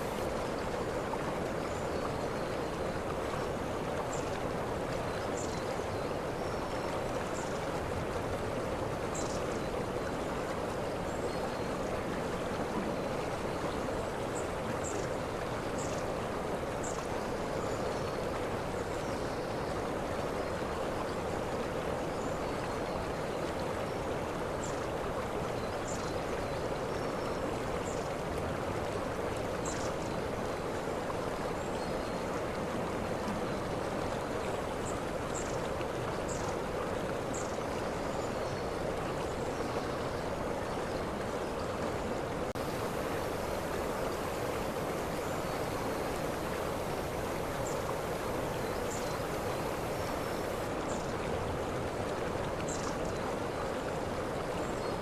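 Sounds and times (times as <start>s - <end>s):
waterfall rushing: 0.0s - 0.4s, 42.6s - 50.7s.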